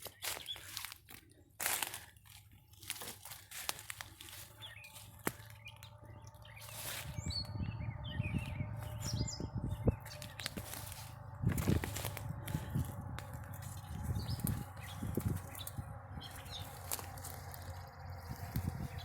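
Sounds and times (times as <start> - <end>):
dry brush snapping and crunching: 0.0 - 19.0
small birds chirping: 0.0 - 19.0
low rumbling on microphone: 4.2 - 19.0.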